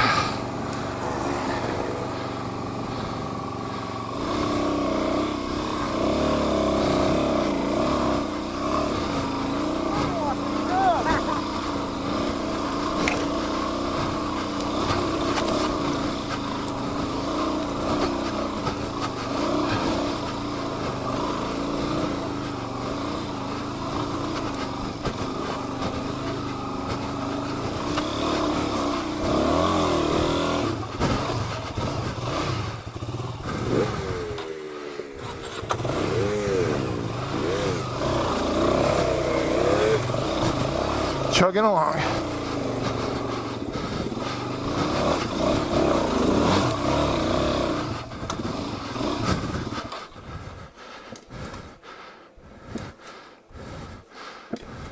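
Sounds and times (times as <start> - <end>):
dirt bike engine revving: 0.0 - 54.9.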